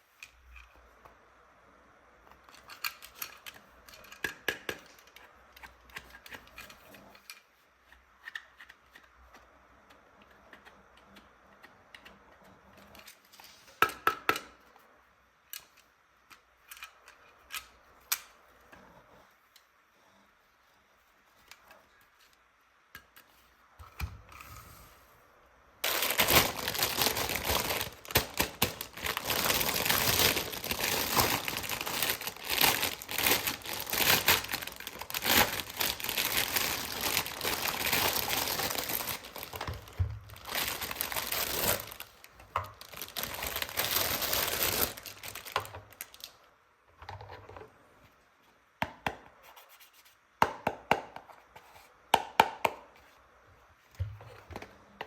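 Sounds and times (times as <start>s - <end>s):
plastic packaging crinkling: 25.8s - 46.4s.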